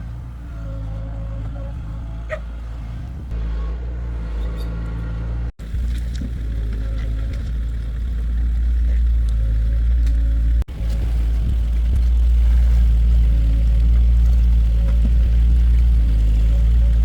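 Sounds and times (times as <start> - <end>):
heavy diesel engine droning: 0.0 - 17.0.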